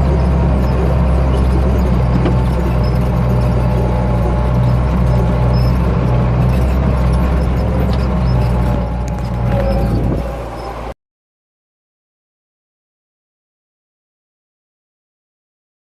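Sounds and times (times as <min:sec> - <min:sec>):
tractor diesel engine running: 0:00.0 - 0:11.0.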